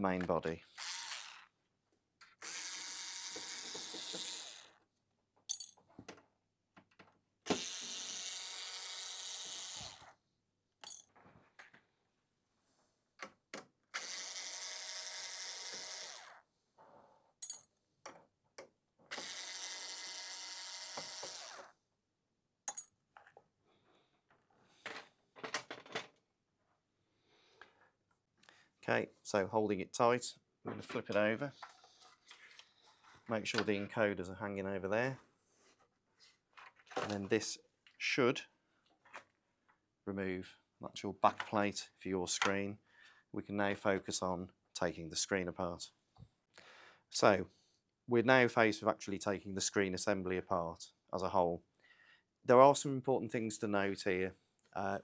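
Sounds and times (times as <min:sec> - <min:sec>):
powered screwdriver running: 0:00.7 - 0:01.5, 0:02.4 - 0:04.7, 0:07.5 - 0:10.1, 0:14.0 - 0:16.4, 0:19.1 - 0:21.7.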